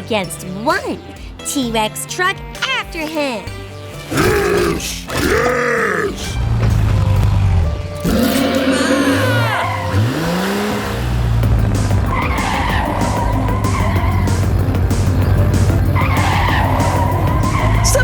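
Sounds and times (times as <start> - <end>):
background music: 0.0 - 18.0
tyres screeching: 4.0 - 18.0
cartoon engine revving: 4.1 - 18.0.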